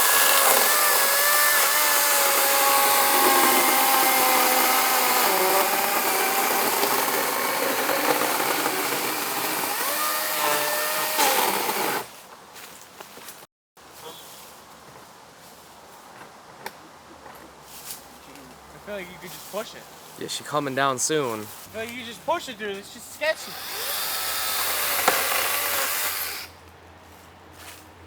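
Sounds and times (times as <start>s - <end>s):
electric chainsaw cutting wood: 0.0s - 12.1s, 23.4s - 26.5s.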